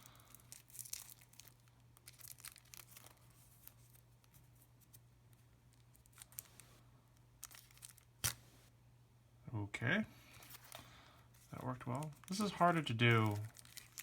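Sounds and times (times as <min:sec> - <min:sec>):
plastic packaging crinkling: 0:00.0 - 0:04.4, 0:05.7 - 0:06.8, 0:07.4 - 0:08.6, 0:10.3 - 0:14.0
low steady hum: 0:00.0 - 0:14.0.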